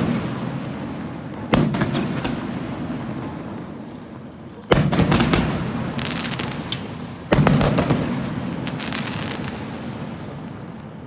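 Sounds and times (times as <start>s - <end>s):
fireworks banging: 1.5s - 10.2s
crackle of small pops: 4.7s - 7.7s.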